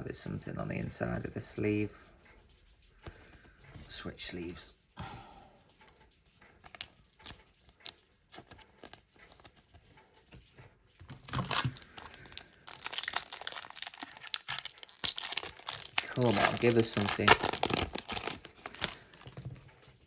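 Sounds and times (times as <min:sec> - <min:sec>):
plastic packaging crinkling: 0:11.1 - 0:19.7.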